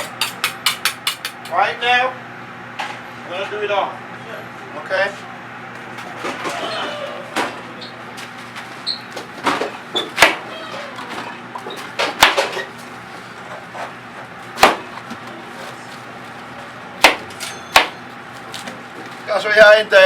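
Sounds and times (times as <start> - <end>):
kitchen knocks and bangs: 12.0 - 12.6.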